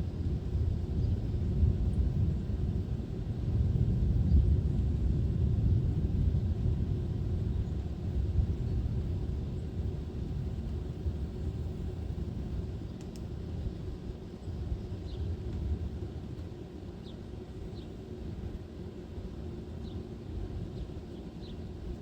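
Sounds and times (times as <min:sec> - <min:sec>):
wind buffeting microphone: 0:00.0 - 0:16.4.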